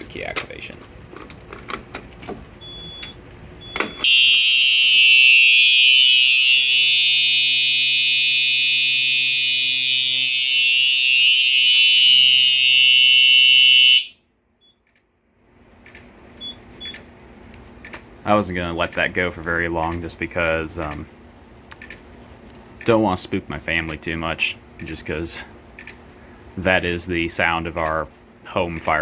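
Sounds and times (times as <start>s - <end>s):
fire alarm horns: 3.6s - 14.3s
clicks: 18.8s - 19.1s, 19.8s - 20.1s, 20.8s - 21.1s, 21.7s - 23.0s, 23.8s - 24.1s, 27.7s - 29.0s.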